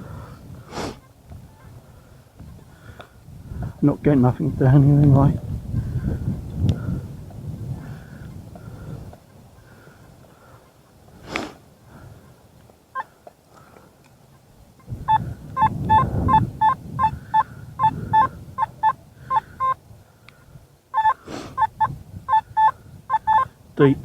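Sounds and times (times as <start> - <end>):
wind rumbling on microphone: 0.0 - 10.4, 14.5 - 24.0
metal detector beeping: 15.1 - 19.8, 21.0 - 23.4.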